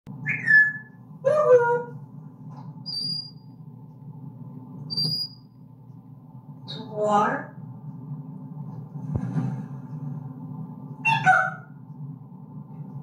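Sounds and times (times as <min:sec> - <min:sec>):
steady low hum: 0:00.1 - 0:13.0
parrot squeaking and whistling: 0:00.2 - 0:01.0, 0:02.8 - 0:03.5, 0:04.9 - 0:05.4, 0:11.0 - 0:11.8.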